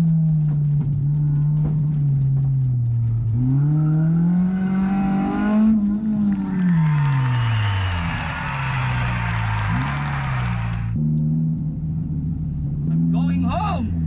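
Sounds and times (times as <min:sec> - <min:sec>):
race car engine: 0:03.1 - 0:13.1.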